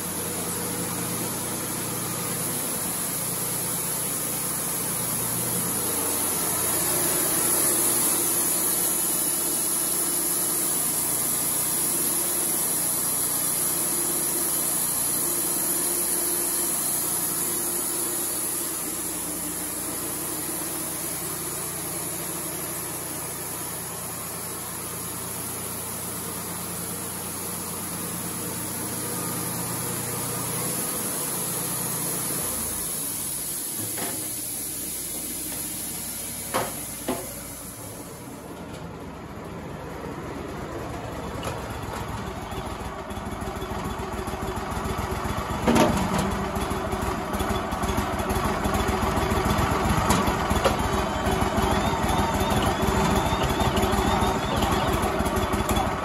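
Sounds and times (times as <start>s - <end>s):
band saw hiss: 0.0s - 38.4s
engine drone: 0.0s - 56.0s.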